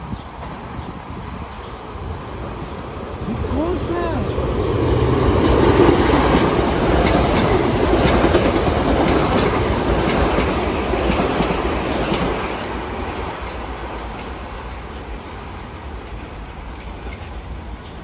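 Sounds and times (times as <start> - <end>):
electric train passing at speed: 0.0 - 18.0
wheels clicking over rail joints: 3.3 - 18.0.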